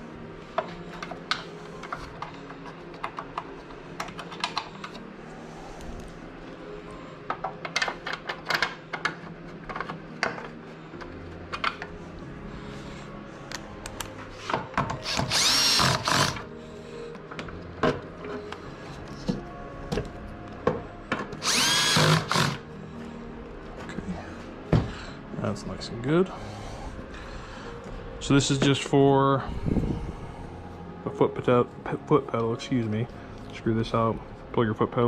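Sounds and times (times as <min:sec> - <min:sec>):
tools and parts clicking: 0:07.4 - 0:11.9
power drill whining: 0:15.0 - 0:16.5, 0:21.4 - 0:22.6.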